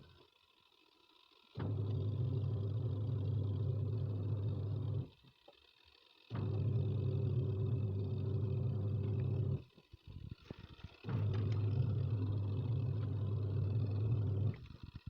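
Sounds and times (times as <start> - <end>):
washing machine agitating: 6.3 - 9.6, 10.6 - 15.0.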